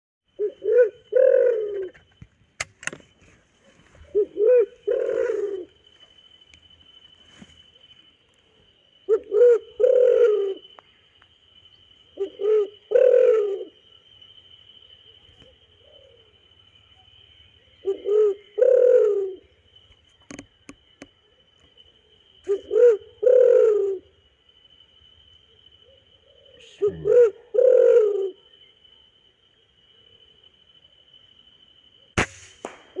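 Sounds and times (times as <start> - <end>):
dove cooing: 0.4 - 2.0, 4.0 - 5.8, 9.1 - 10.8, 12.2 - 13.8, 17.8 - 19.5, 22.5 - 24.1, 25.8 - 28.5.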